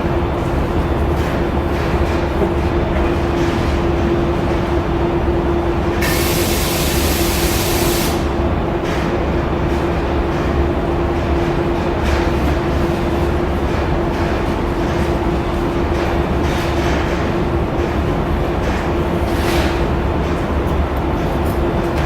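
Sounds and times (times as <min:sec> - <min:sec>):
compressed air hiss: 0:06.0 - 0:08.2.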